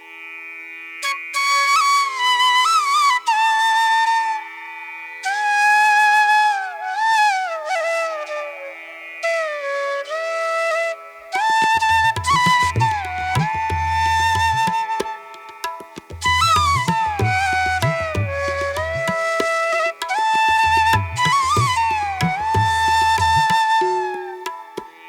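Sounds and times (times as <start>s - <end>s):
flute melody: 5.2s - 25.0s
percussion: 11.4s - 25.0s.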